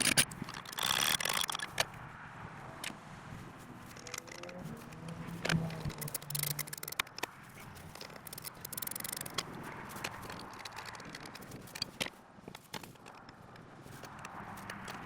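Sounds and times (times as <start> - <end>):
hand tools scraping: 0.0 - 1.9
metallic clicks of hand tools: 0.0 - 2.0, 3.9 - 15.0.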